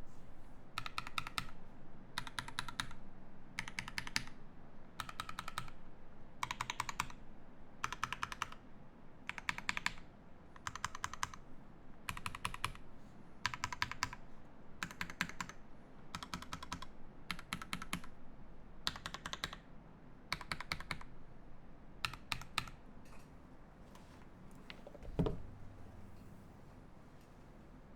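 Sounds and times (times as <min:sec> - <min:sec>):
mechanical keyboard typing: 0:00.8 - 0:01.6, 0:02.2 - 0:02.9, 0:03.6 - 0:04.3, 0:05.0 - 0:05.8, 0:06.4 - 0:07.2, 0:07.8 - 0:08.6, 0:09.3 - 0:10.0, 0:10.6 - 0:11.4, 0:12.1 - 0:12.8, 0:13.4 - 0:14.2, 0:14.8 - 0:15.6, 0:16.2 - 0:18.1, 0:18.9 - 0:19.6, 0:20.3 - 0:21.1, 0:22.0 - 0:22.8.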